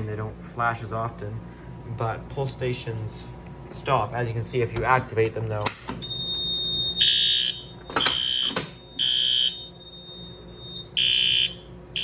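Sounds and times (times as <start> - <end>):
fire alarm horn blasts: 6.0 - 12.0.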